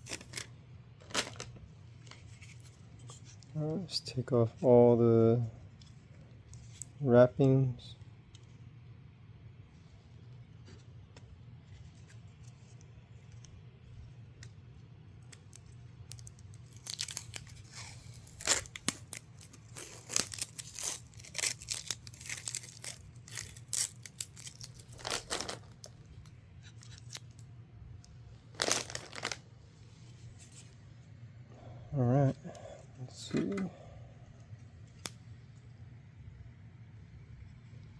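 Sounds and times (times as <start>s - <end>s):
packaging wrap tearing and crinkling: 0.0s - 1.6s, 15.2s - 26.0s, 26.6s - 27.4s, 28.5s - 29.4s.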